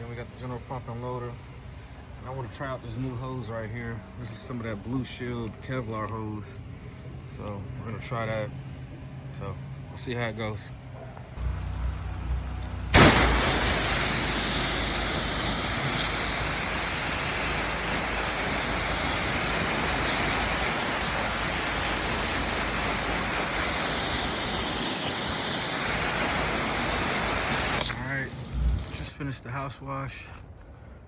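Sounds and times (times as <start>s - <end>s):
pressure washer spraying: 11.4s - 29.1s.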